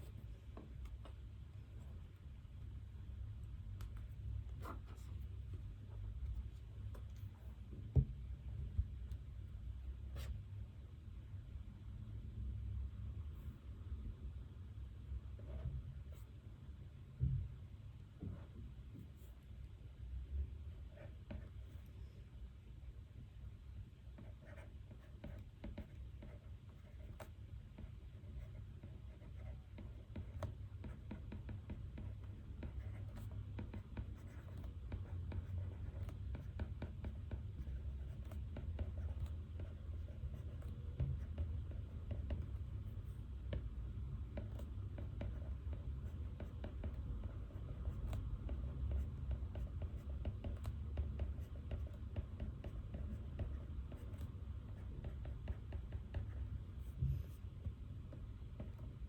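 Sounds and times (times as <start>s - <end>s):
low steady hum: 0.0s - 59.0s
pen scratching on paper: 3.8s - 5.3s, 20.9s - 21.9s, 24.2s - 59.0s.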